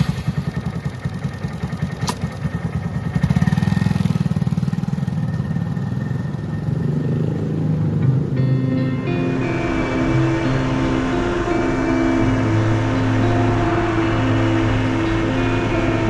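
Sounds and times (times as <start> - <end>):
motorcycle engine running: 0.0 - 8.8
music: 7.9 - 16.0.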